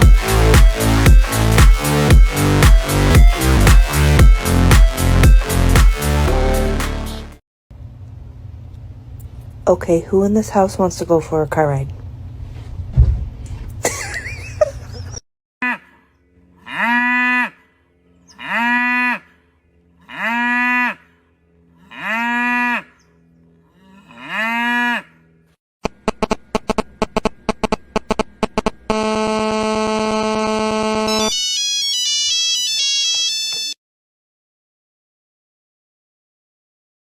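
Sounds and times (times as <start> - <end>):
cow mooing: 16.6 - 17.7, 18.3 - 19.4, 20.0 - 23.0, 23.7 - 25.4
steady electronic tone: 26.0 - 33.8.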